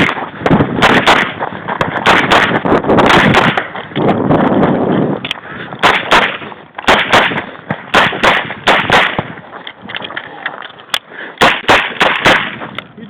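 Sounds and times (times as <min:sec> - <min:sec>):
revolver gunshots: 0:00.0 - 0:03.7, 0:05.8 - 0:09.4, 0:11.4 - 0:12.7.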